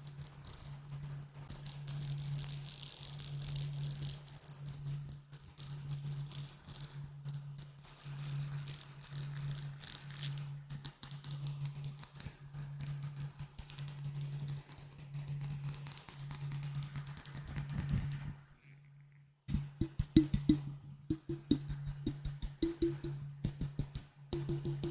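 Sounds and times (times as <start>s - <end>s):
fast tapping on glass bottles: 19.8s - 24.9s.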